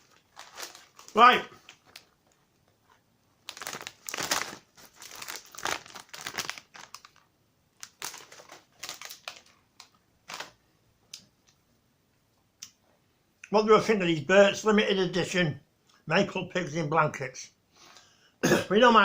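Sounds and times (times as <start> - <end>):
crisp packet crinkling: 0.0 - 10.6.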